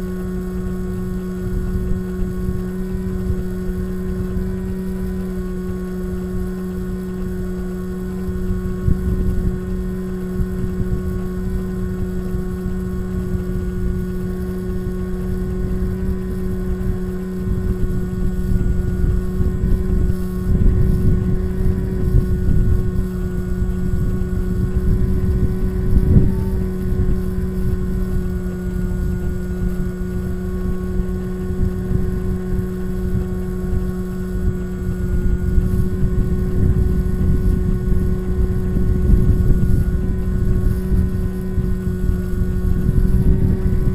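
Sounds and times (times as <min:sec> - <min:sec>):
electric motor and propeller droning: 0:00.0 - 0:43.9
wind rush: 0:08.3 - 0:43.9.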